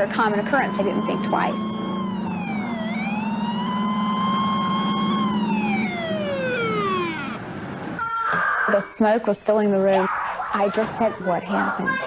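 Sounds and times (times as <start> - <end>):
low hum: 0.0 - 8.0
siren wailing: 0.0 - 9.0, 9.8 - 12.0.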